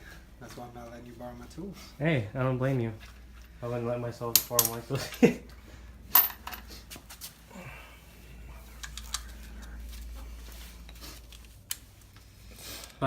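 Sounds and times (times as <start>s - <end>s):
low steady hum: 0.0s - 13.0s
hand tools clicking and knocking: 4.3s - 5.3s, 8.8s - 9.7s.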